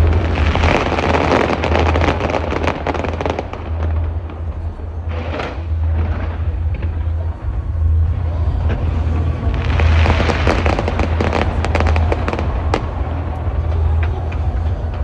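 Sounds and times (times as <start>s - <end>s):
fireworks crackling bangs: 0.0s - 15.0s
low rumble: 0.0s - 15.0s.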